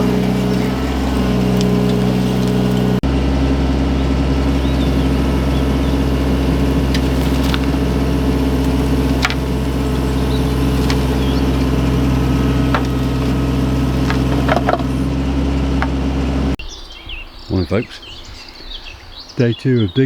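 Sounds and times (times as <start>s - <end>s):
diesel engine running: 0.0s - 16.6s
sharp clicks and knocks: 6.9s - 15.1s.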